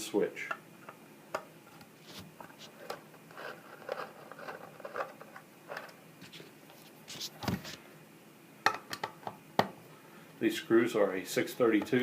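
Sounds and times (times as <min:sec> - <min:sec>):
screwdriver clicks and scrapes: 0:02.6 - 0:06.0.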